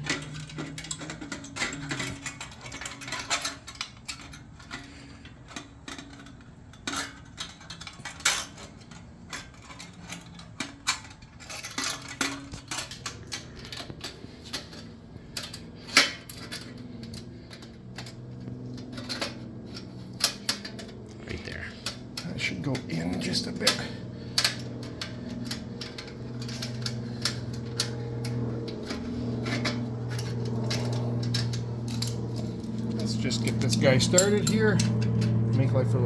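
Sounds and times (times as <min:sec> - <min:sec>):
hand tool clicking on metal: 0:33.3 - 0:35.7.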